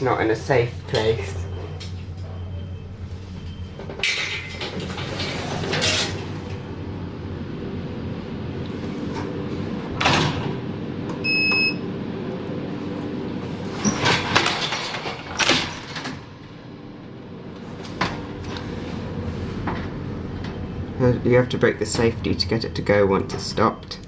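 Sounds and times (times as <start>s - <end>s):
lift machine hum: 0.0s - 24.0s
lift doors clunking and rattling: 3.5s - 6.6s, 9.2s - 11.1s, 13.7s - 16.4s
short electronic beep: 11.2s - 11.8s.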